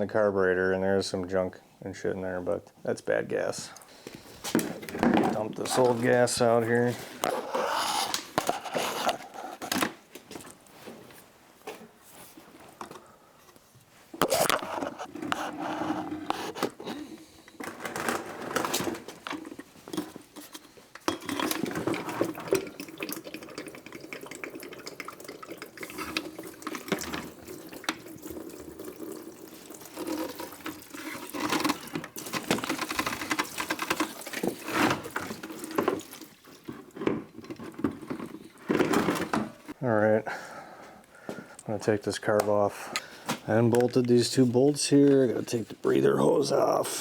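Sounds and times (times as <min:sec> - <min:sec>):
liquid pouring and splashing: 0:21.3 - 0:37.7.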